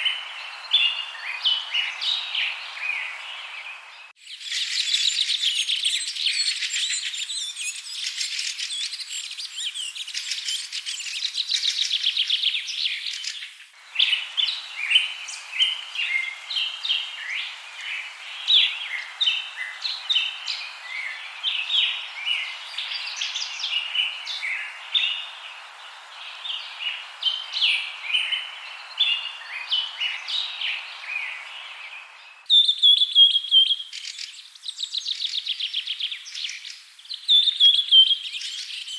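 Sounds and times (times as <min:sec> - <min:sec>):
birds chirping and trilling: 0:00.0 - 0:38.9
steady hiss: 0:09.6 - 0:32.3.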